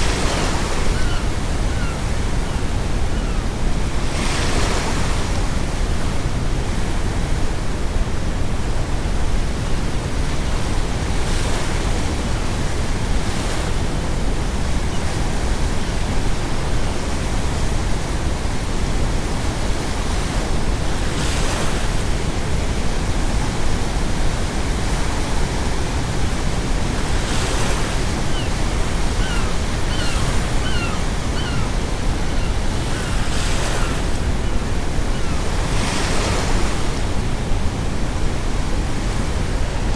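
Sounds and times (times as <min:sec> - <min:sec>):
ocean waves breaking on shore: 0:00.0 - 0:39.9
seagull calls: 0:00.2 - 0:03.5, 0:28.3 - 0:36.4.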